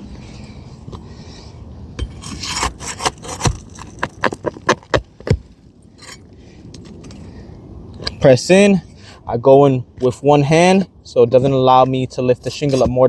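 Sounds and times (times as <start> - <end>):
sharp clicks and scrapes: 2.0 - 5.4
pry tool scraping shingle: 2.0 - 7.3, 10.0 - 13.0.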